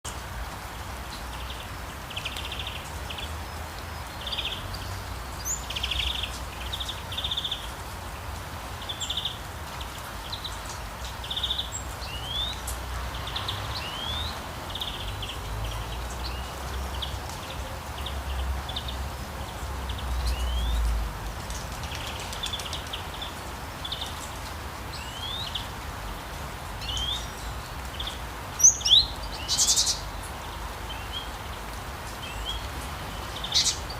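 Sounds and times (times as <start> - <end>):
steady rain hiss: 0.1 - 33.9
birds trilling and chirping: 8.8 - 33.9.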